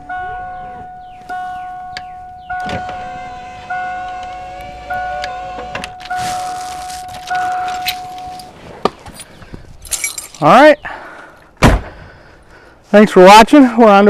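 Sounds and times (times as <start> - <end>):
car warning chime dinging: 0.0 - 8.7.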